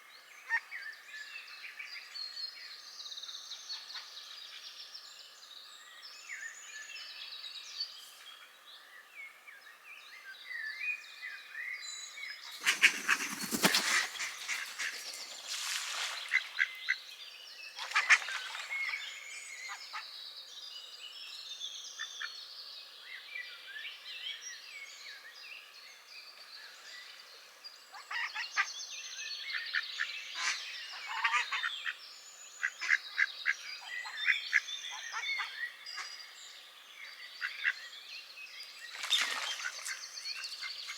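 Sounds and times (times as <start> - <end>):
songbirds chirping: 0.0 - 40.9
ducks calling loudly: 12.5 - 17.1.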